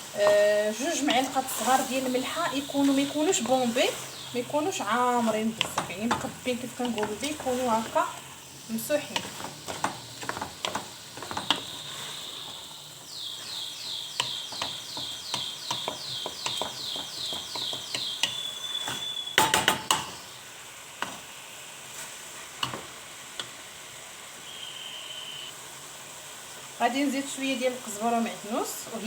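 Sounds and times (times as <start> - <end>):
food sizzling in a pan: 0.0 - 29.0
spoon scraping and knocking pan: 0.1 - 20.3.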